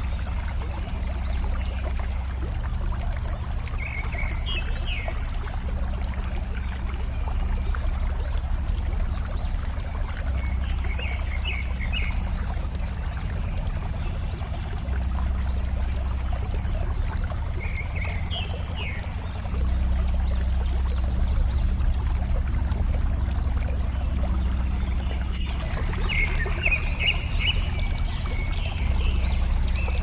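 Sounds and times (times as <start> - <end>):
water flowing and babbling: 0.0 - 30.0
bird chirping: 25.2 - 30.0.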